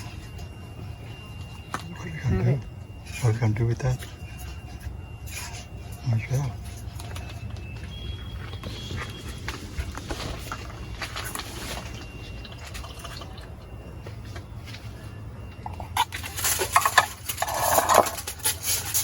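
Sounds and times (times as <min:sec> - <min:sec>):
wet scraping and plopping food: 0:08.5 - 0:15.0
clattering: 0:16.3 - 0:18.5.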